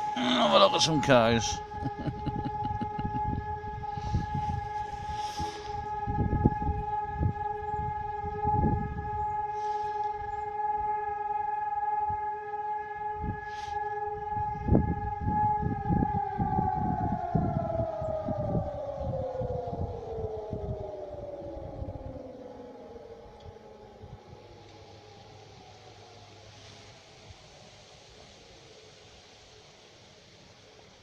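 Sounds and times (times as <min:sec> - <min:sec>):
air raid siren: 0:00.0 - 0:31.0.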